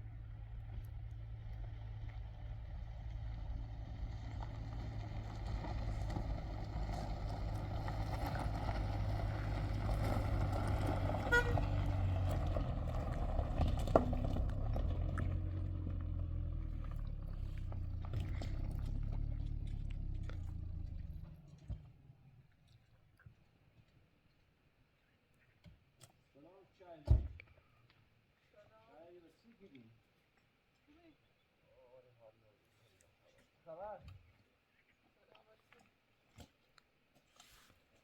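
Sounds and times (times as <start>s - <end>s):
engine running: 0.0s - 22.4s.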